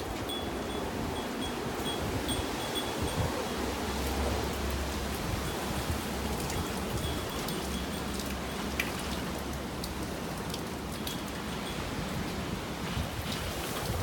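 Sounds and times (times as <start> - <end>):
rain rushing: 0.0 - 14.0
wind rumbling on microphone: 0.0 - 14.0
raindrops ticking: 4.5 - 12.4.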